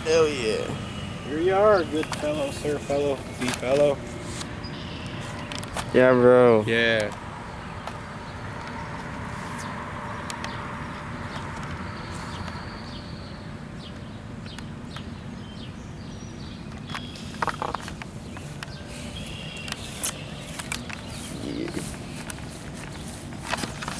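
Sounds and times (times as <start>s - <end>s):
steady low rumble: 0.0s - 5.1s.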